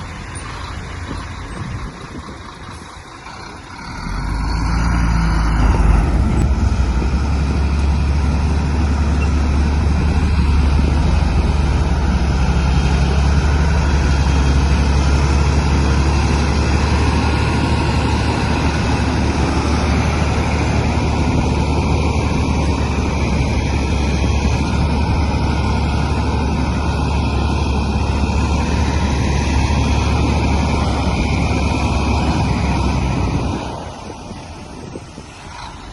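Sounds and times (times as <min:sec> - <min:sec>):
bulldozer diesel engine running: 0:00.0 - 0:35.9
bulldozer pushing stones: 0:00.0 - 0:35.9.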